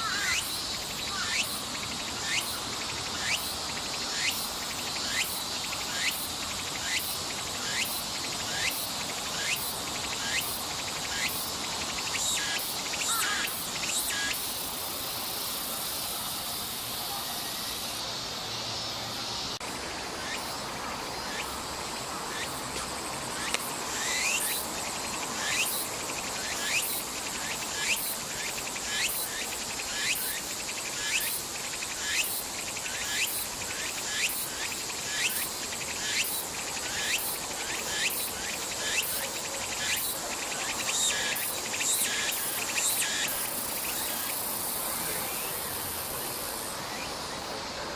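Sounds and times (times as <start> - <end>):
cicada singing shrill phrases: 0.0 - 21.7, 23.3 - 47.6
cicada steady buzz: 0.0 - 47.9.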